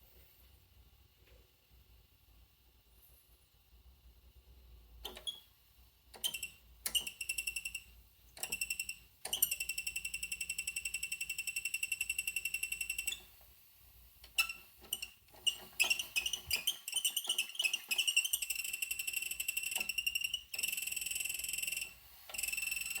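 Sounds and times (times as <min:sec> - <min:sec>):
toilet fluttering squeal: 0:14.4 - 0:23.0.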